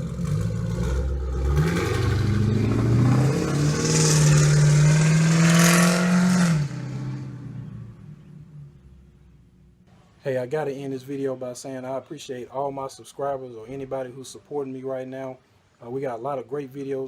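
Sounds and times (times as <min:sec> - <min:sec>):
car exhaust revving: 0:00.0 - 0:09.8.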